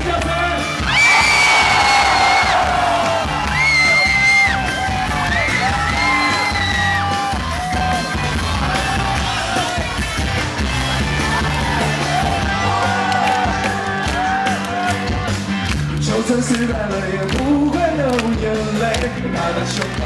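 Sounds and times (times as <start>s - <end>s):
live pop-rock band: 0.0s - 20.0s
crowd yelling along: 0.4s - 15.5s.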